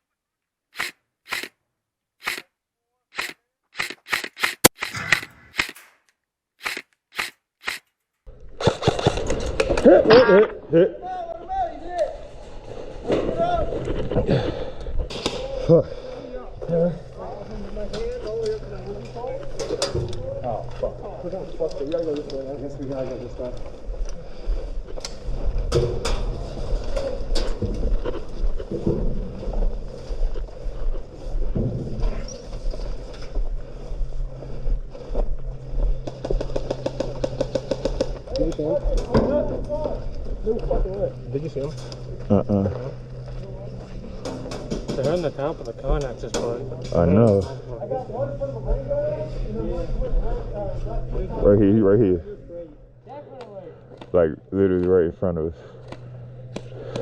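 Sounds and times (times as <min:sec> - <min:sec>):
sharp clicks: 0:00.8 - 0:01.5, 0:02.2 - 0:02.5, 0:03.2 - 0:07.9
airsoft rifle shots: 0:03.2 - 0:07.8.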